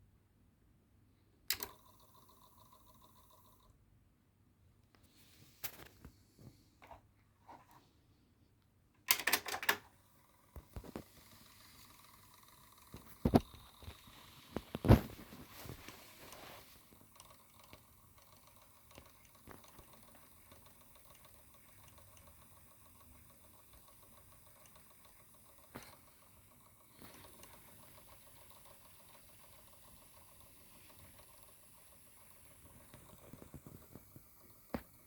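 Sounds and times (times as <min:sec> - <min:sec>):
tape deck mechanical clicks: 0:01.5 - 0:01.9, 0:09.1 - 0:09.9.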